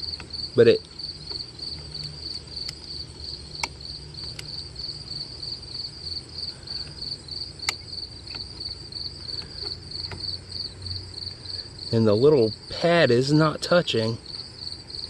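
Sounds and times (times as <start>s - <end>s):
crickets chirping: 0.0s - 15.0s
sharp clicks: 2.3s - 2.8s, 3.6s - 4.5s, 7.6s - 8.7s.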